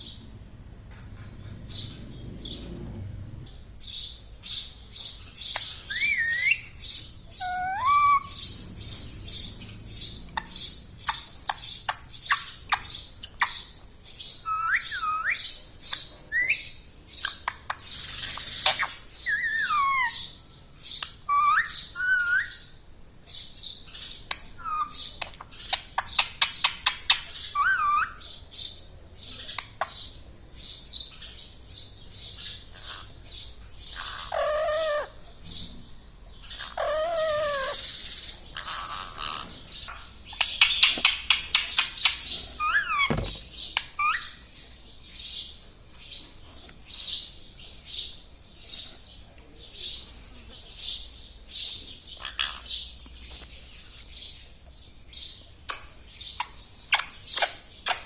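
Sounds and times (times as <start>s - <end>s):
parrot chirping and chattering: 3.8s - 30.2s, 32.1s - 35.7s, 36.4s - 44.5s, 49.7s - 54.5s, 55.2s - 58.0s.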